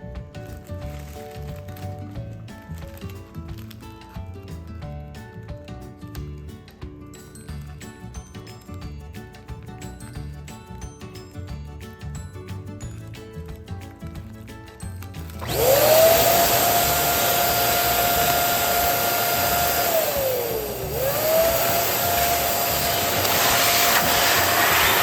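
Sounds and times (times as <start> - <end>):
background music: 0.0 - 25.0
electric balloon pump whining: 15.3 - 25.0.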